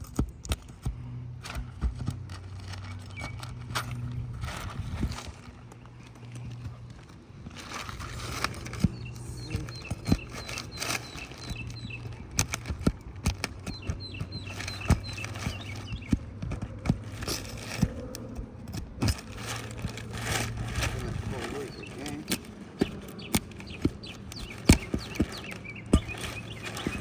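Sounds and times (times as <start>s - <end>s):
steady low hum: 0.0s - 27.0s
knocks and clacks of tools on roof: 22.2s - 27.0s.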